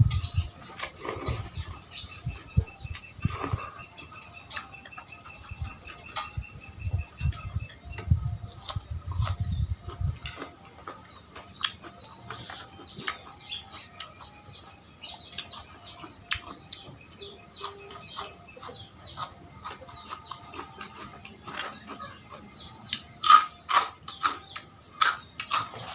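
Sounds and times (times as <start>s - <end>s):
chewing and mouth sounds: 7.1s - 25.9s.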